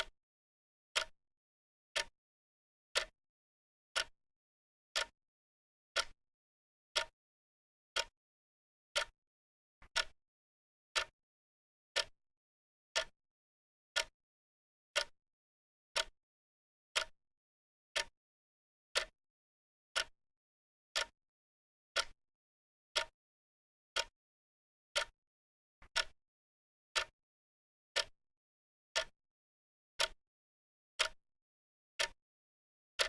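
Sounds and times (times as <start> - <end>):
clock ticking: 10.0 - 10.2, 22.0 - 22.2, 25.9 - 26.2.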